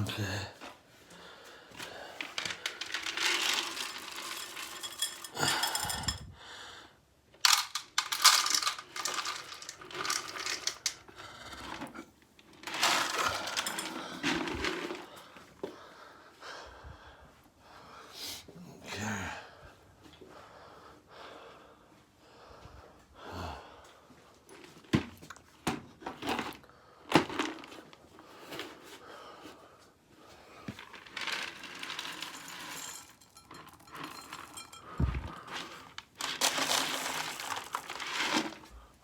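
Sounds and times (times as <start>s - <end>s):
dry food poured into bowls: 2.2s - 6.2s, 7.4s - 11.9s, 12.6s - 15.1s, 27.1s - 28.0s, 30.8s - 38.8s.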